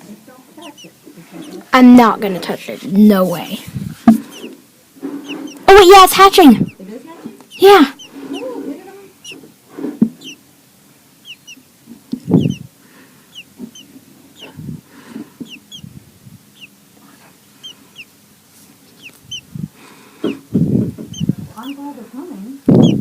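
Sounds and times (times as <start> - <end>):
birds chirping: 0.0 - 23.0
low bumps: 19.2 - 21.6.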